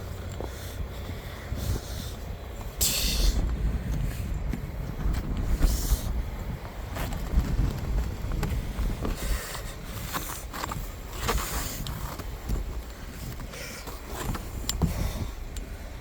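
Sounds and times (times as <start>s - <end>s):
wind rumble on microphone: 0.0s - 16.0s
snow brushed and scraped off car: 4.0s - 15.8s.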